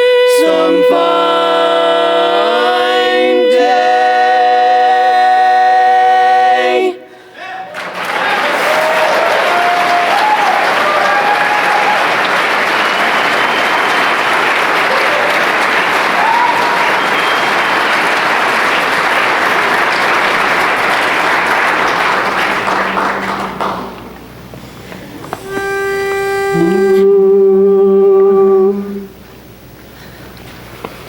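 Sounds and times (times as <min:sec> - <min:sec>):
pitch pipe note: 0:00.0 - 0:05.4, 0:25.3 - 0:29.1
vocal quartet humming: 0:00.0 - 0:29.6
audience applauding and cheering: 0:07.4 - 0:24.6.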